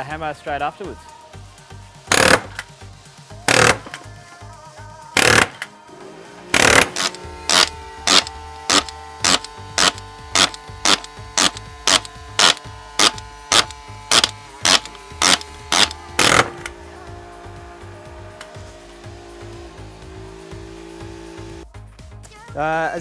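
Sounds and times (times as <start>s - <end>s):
background music: 0.0s - 23.0s
nailer driving nails into steel: 2.1s - 2.7s, 3.5s - 4.1s, 5.2s - 5.7s, 6.5s - 16.7s.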